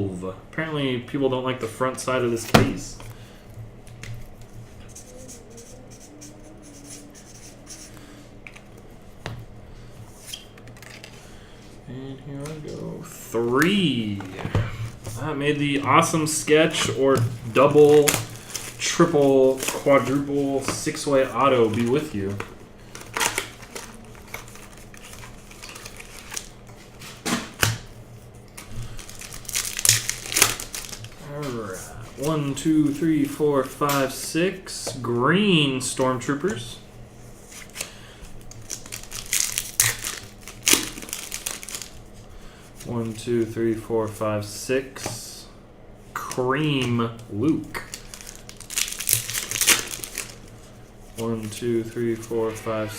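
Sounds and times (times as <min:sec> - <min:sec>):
trading cards rustling: 0:04.0 - 0:08.9, 0:13.6 - 0:27.0, 0:28.5 - 0:33.4, 0:37.4 - 0:42.0, 0:46.3 - 0:52.9.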